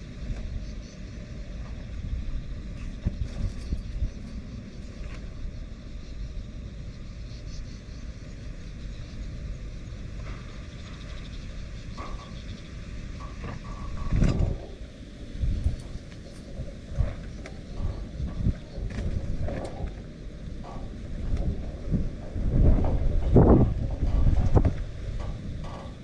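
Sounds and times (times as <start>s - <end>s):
strong wind buffeting microphone: 0.0s - 26.0s.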